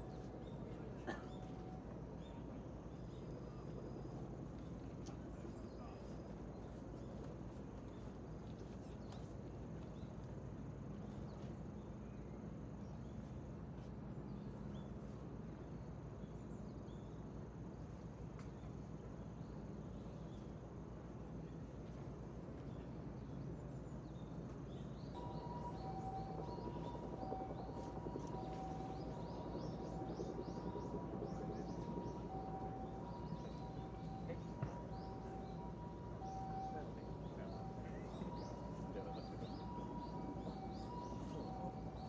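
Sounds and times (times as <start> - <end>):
high insect trill: 25.2 - 42.0
two steady tones: 25.2 - 42.0.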